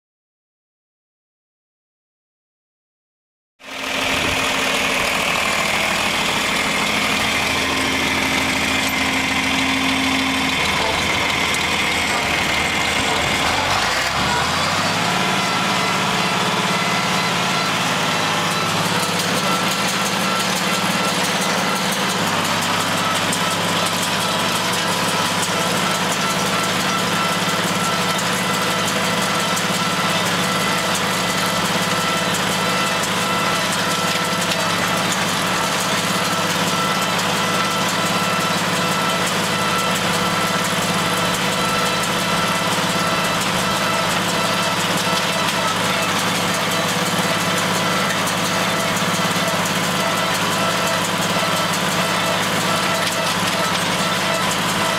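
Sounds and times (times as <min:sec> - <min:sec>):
tractor engine revving: 0:03.6 - 0:54.9.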